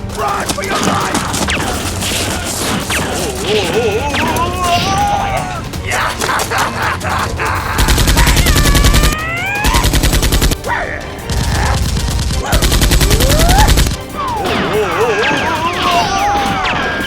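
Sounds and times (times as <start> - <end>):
automatic gunfire: 7.8 - 10.6, 11.3 - 14.0.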